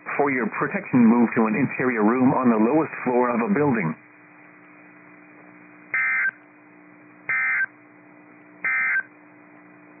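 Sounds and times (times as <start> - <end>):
faint radio hum: 0.0 - 8.0
data tone bursts: 6.0 - 6.4, 7.3 - 7.7, 8.6 - 9.1.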